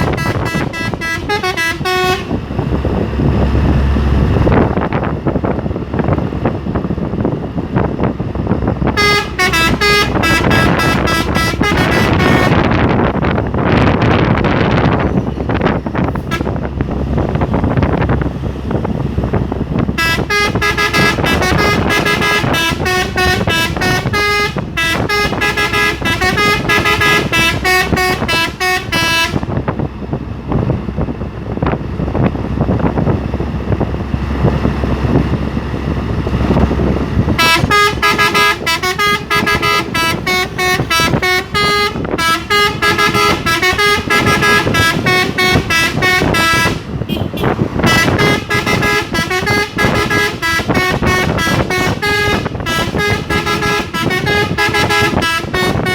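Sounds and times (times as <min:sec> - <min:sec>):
air horn tooting a tune: 0:00.0 - 0:02.4, 0:08.8 - 0:13.1, 0:16.2 - 0:16.7, 0:19.9 - 0:29.6, 0:37.3 - 0:55.9
road noise: 0:00.0 - 0:55.9
truck engine: 0:00.0 - 0:55.9.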